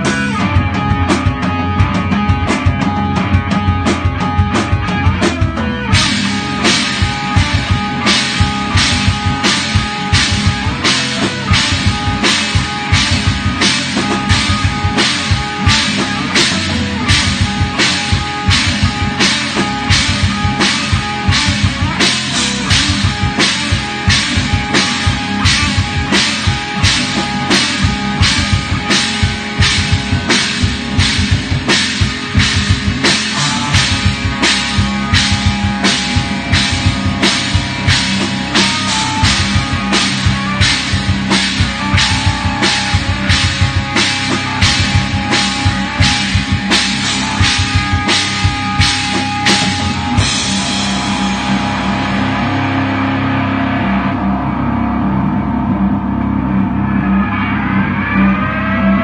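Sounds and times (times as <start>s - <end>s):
drum kit beat: 0.0s - 53.7s
progressive metal band playing: 0.0s - 59.0s.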